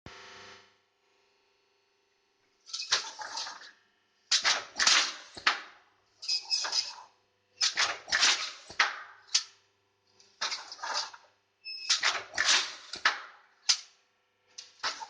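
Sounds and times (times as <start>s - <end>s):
machine hissing and clatter: 2.7s - 3.7s, 4.3s - 5.6s, 6.2s - 9.4s, 10.2s - 11.3s, 11.9s - 13.8s, 14.6s - 15.0s.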